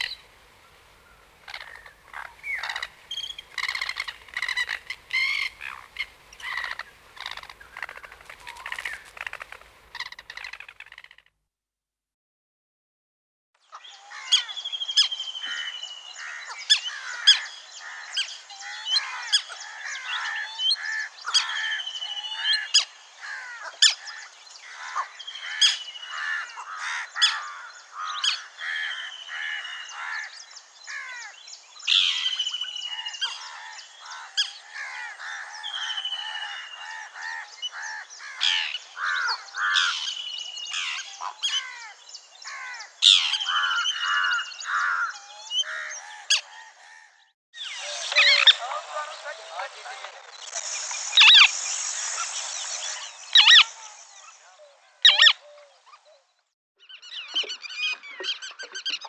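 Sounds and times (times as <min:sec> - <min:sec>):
sharp bird chips: 0:00.0 - 0:10.8, 0:50.2 - 0:54.5
bird chorus: 0:00.0 - 0:11.2, 0:13.6 - 0:59.0
warbling bird calls: 0:00.0 - 0:11.2, 0:32.0 - 0:59.0.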